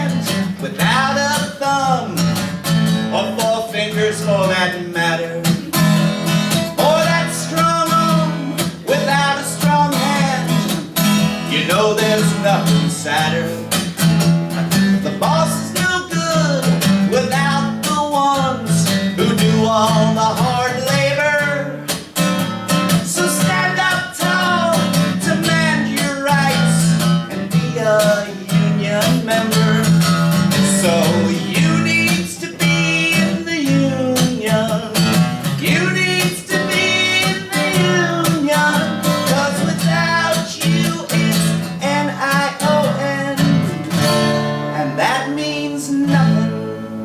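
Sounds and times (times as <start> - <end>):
lead guitar with bent notes: 0.0 - 47.0
strummed guitar chords: 0.0 - 47.0.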